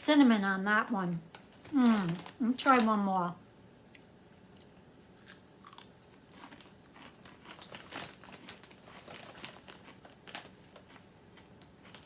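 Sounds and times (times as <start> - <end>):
crunchy snack being chewed: 3.9 - 12.0.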